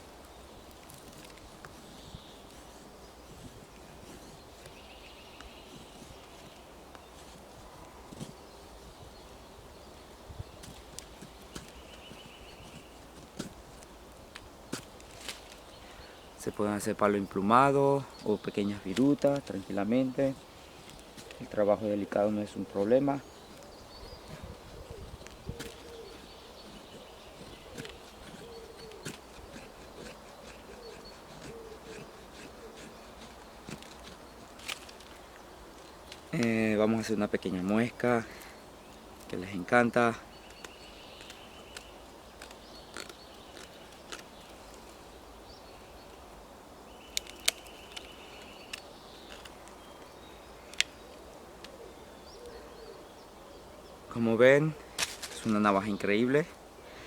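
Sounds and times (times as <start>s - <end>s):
knife shaving wood: 10.6s - 15.8s, 18.0s - 36.5s, 40.4s - 45.0s, 47.1s - 49.8s
bird hooting: 24.2s - 33.8s.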